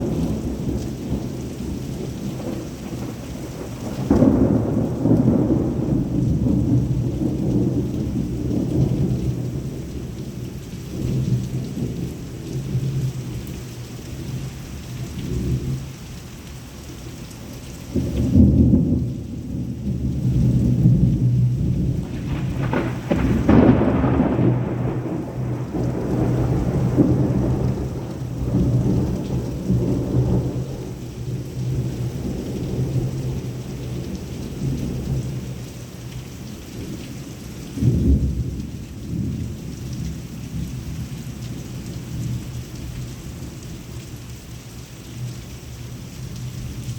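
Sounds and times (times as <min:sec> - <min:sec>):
thunder rumbling: 0:00.0 - 0:13.1, 0:17.9 - 0:35.6, 0:37.8 - 0:41.3
heavy rain: 0:00.0 - 0:46.9.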